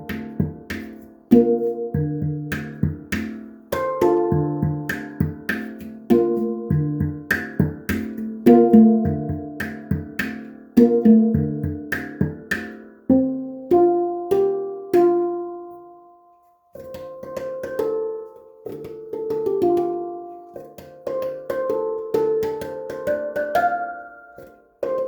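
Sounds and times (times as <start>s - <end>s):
steel handpan notes ringing: 0.0s - 15.7s.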